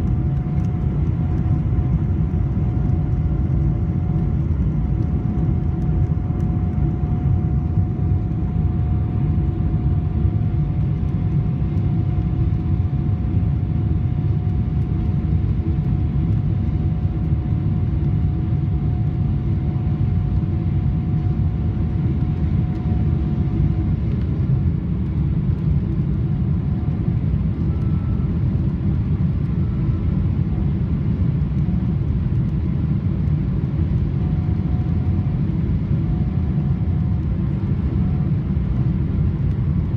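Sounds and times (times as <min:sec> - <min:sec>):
aircraft cabin engine rumble: 0:00.0 - 0:39.9
faint thin whine: 0:26.3 - 0:31.3.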